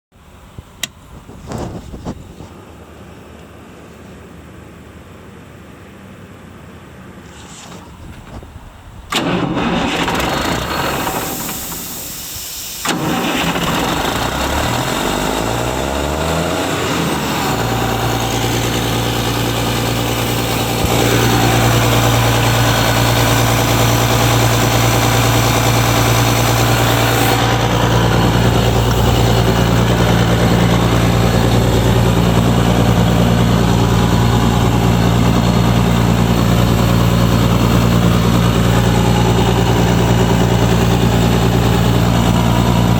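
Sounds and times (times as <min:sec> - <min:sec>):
air compressor engine starting: 0:08.9 - 0:42.9.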